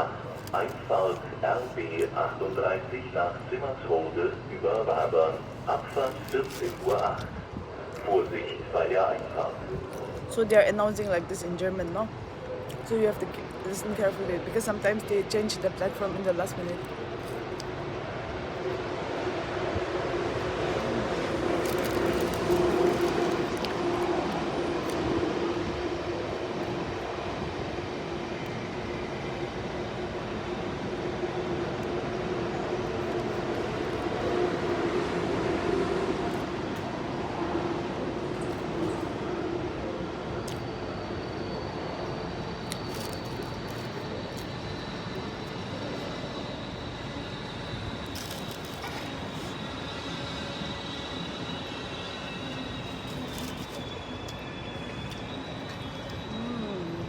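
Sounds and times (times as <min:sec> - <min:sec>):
train humming: 0:00.0 - 0:57.0
thin high whine: 0:40.1 - 0:57.0.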